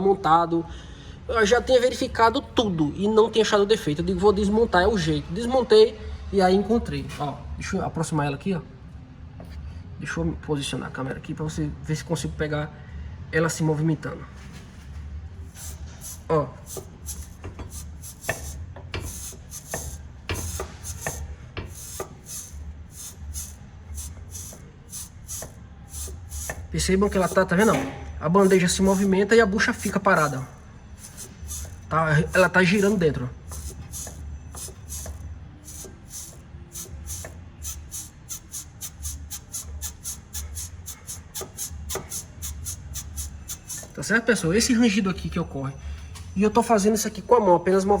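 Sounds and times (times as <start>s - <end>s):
suspension bushing creaking: 15.4s - 44.1s.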